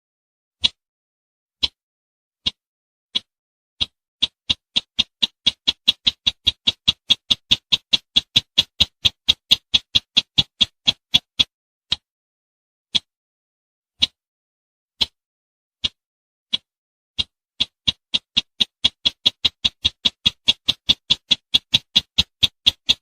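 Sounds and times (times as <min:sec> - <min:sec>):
bird ticking calls: 0:03.2 - 0:12.0.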